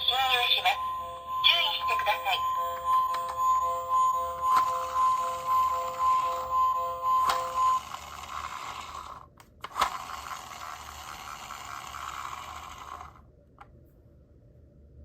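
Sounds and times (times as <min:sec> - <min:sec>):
toy gear mechanism whirring: 0:07.2 - 0:13.2.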